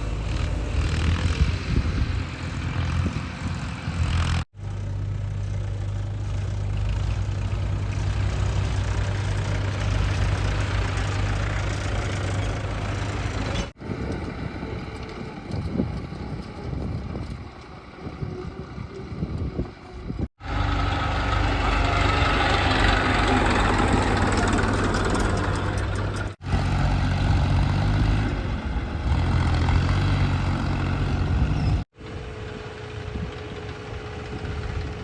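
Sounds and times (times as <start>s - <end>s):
heavy diesel engine running: 0.0s - 35.0s.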